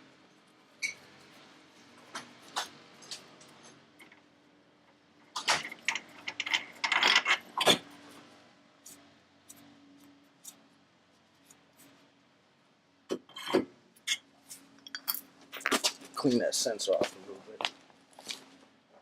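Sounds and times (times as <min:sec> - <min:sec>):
metal tools clinking and clattering: 0:05.4 - 0:07.8, 0:14.8 - 0:15.8.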